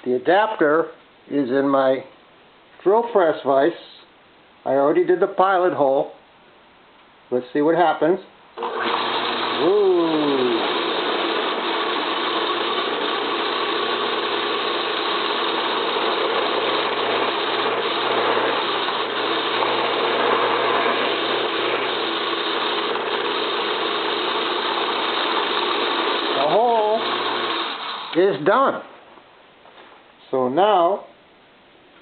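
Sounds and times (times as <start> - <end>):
drill press mechanical whir: 8.6 - 28.2.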